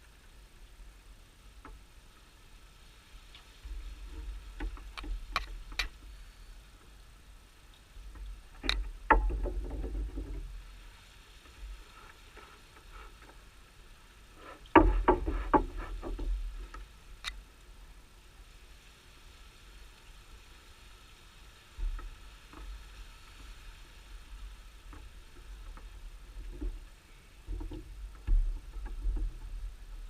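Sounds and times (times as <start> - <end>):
sharp knocks and clicks: 8.6 - 10.4, 14.4 - 17.4.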